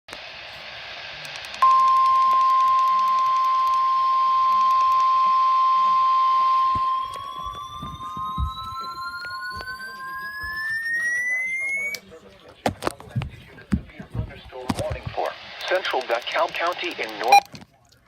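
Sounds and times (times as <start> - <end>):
loud steady high alert tone: 1.6 - 12.0
tone rising in pitch: 1.6 - 12.0.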